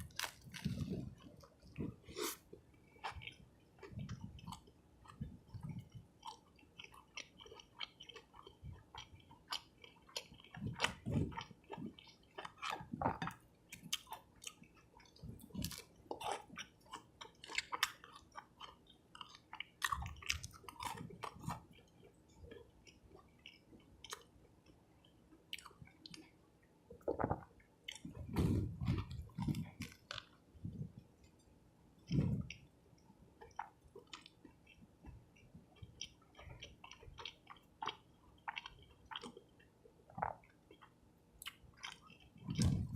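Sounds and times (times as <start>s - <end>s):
chewing and crunching food: 0.0s - 42.9s.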